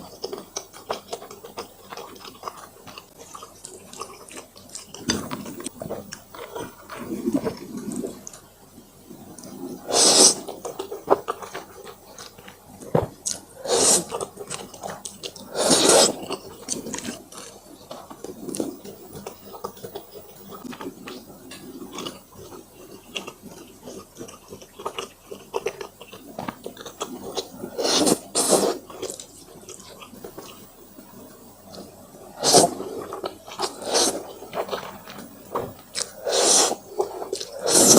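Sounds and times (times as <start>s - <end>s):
wet chewing: 0.0s - 37.9s
slurping noodles: 9.4s - 11.6s, 13.6s - 17.6s, 27.3s - 29.2s, 32.3s - 37.9s.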